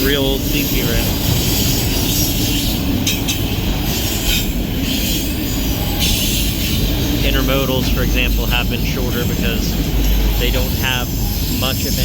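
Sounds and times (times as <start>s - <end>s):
freight cars rolling on rails: 0.0s - 12.0s
high-pitched wheel squeals: 1.5s - 8.6s, 9.6s - 12.0s.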